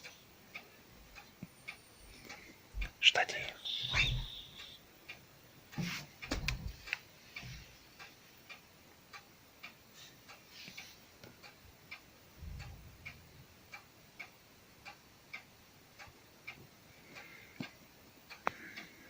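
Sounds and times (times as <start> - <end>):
clock ticking: 0.0 - 19.0
knocks: 6.3 - 6.8.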